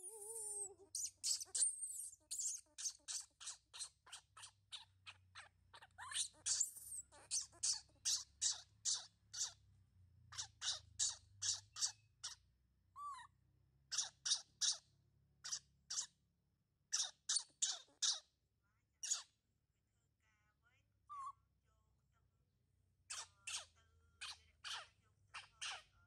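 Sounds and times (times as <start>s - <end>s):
baby monkey squeaking: 0.0s - 9.6s, 10.3s - 12.4s, 13.0s - 13.3s, 13.9s - 16.2s, 16.9s - 18.3s, 19.0s - 19.3s, 21.1s - 21.3s, 23.1s - 26.0s.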